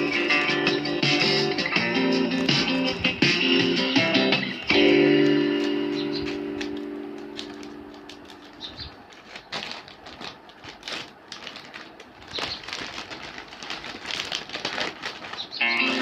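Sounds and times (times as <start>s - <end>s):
plastic packaging crinkling: 4.7s - 16.0s.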